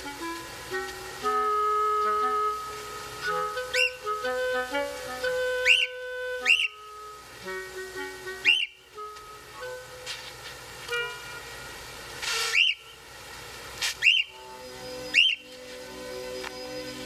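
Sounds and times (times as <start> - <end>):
soft background music: 0.0 - 13.0, 14.0 - 17.0
whistle-like gliding chirps: 3.2 - 4.2, 5.6 - 6.9, 8.4 - 8.9, 12.4 - 13.0, 14.0 - 17.0.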